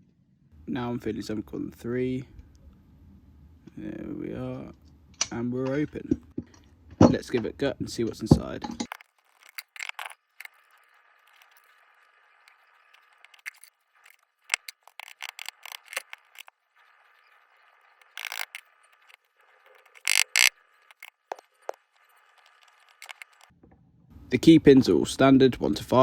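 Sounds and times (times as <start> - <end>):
metal lock parts clicking: 18.2 - 18.6, 20.0 - 21.1.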